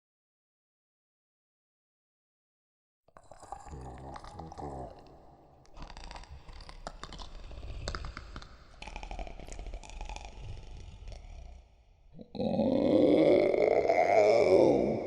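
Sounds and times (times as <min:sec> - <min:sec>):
low creaky monster growl: 0:03.2 - 0:15.0
wet clicking and crackling: 0:04.1 - 0:11.6.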